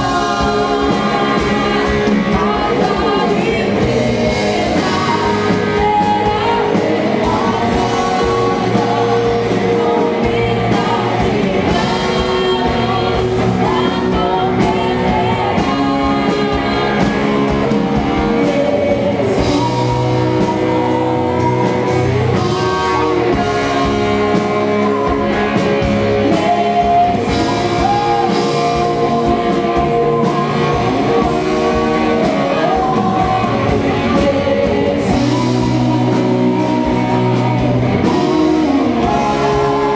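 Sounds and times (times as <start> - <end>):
band playing worship song: 0.0 - 39.9
guitar: 0.0 - 39.9
person singing: 0.0 - 39.9.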